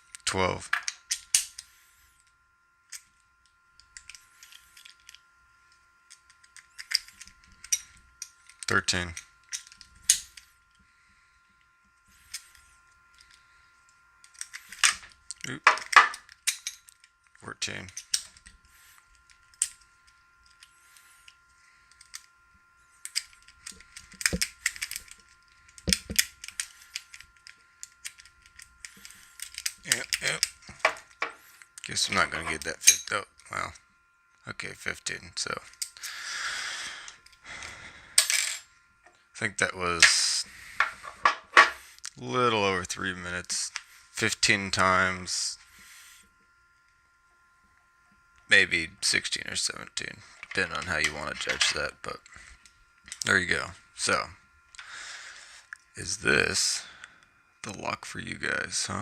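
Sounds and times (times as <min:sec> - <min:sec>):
lock picking clicks and scrapes: 0:06.1 - 0:08.7.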